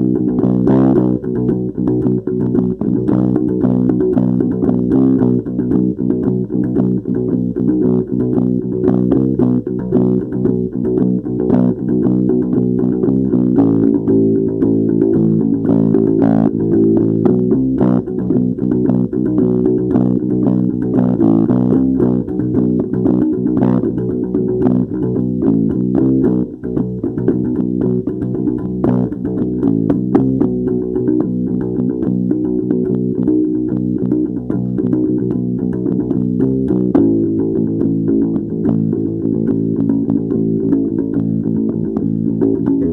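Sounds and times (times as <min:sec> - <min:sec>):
plucked guitar and bass music: 0:00.0 - 0:42.9.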